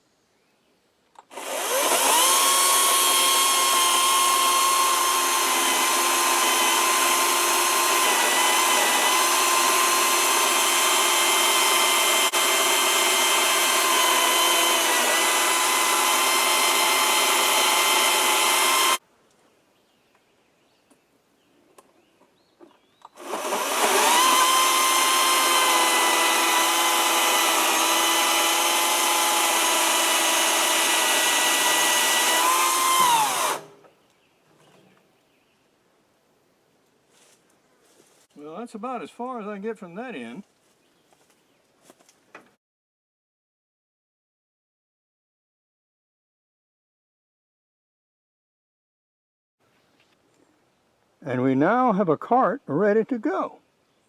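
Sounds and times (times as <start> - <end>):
electric chainsaw cutting wood: 1.2 - 19.0, 23.2 - 33.8.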